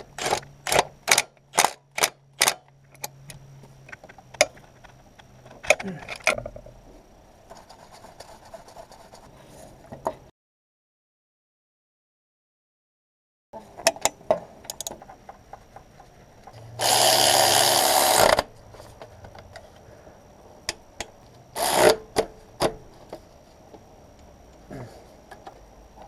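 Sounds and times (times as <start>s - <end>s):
power tool running: 16.8s - 18.5s, 21.6s - 22.0s.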